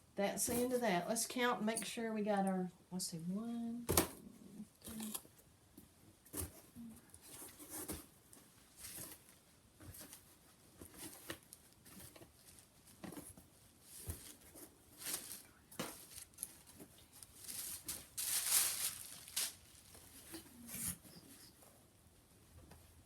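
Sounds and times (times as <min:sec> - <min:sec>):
fabric rustling: 0:13.6 - 0:21.6.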